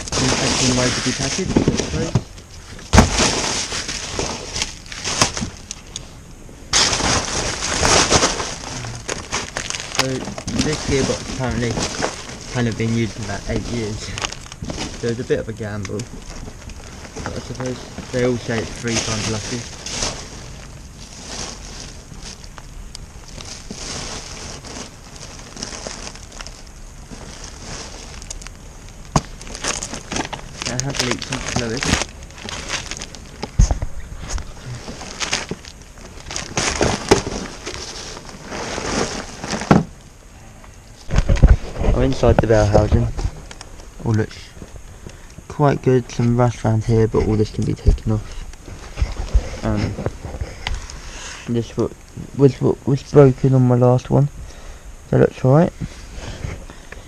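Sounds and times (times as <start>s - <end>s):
packaging crackling and crinkling: 0.0s - 6.1s, 6.7s - 40.2s, 41.0s - 46.8s.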